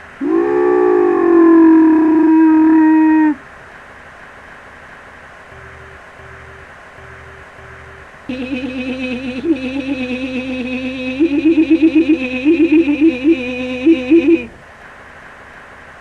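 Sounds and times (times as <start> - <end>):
person holding low wavering note: 8.3 - 14.6.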